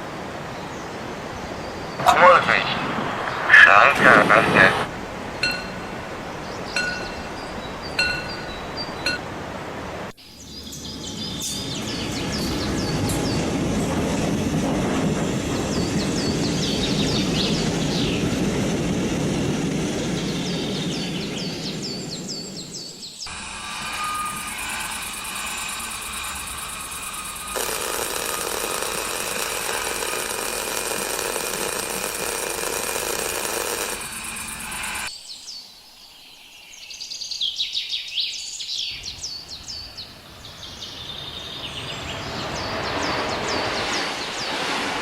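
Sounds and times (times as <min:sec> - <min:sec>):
ambient noise with held tones: 0:00.0 - 0:35.1
birds chirping: 0:00.5 - 0:09.2, 0:10.2 - 0:44.8.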